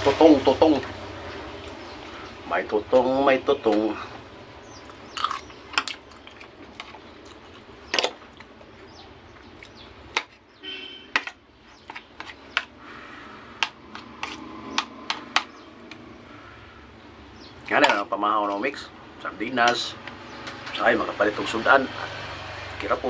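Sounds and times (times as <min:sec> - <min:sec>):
chewing: 0:04.9 - 0:09.9.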